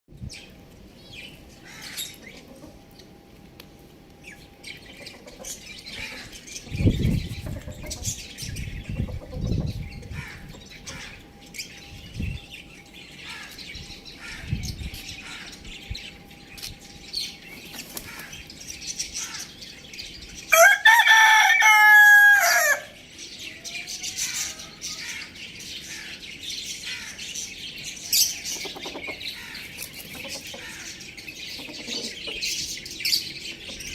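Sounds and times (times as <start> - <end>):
chickens clucking and chirping: 0.2 - 33.9
rooster crowing: 20.5 - 23.0.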